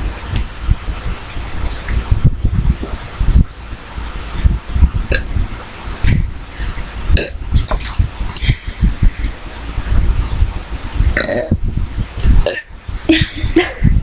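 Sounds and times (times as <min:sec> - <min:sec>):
person burping: 0:11.2 - 0:11.6, 0:12.4 - 0:12.7.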